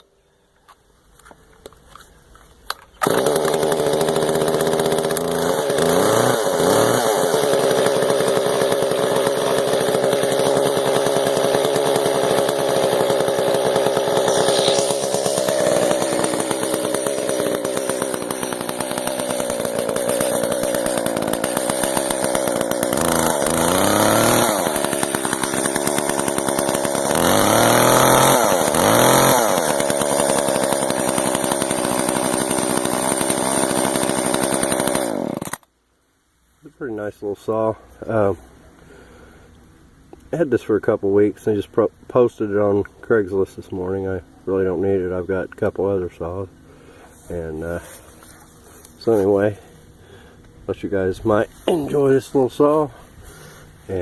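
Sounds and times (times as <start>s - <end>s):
chainsaw running and revving: 3.0s - 35.6s.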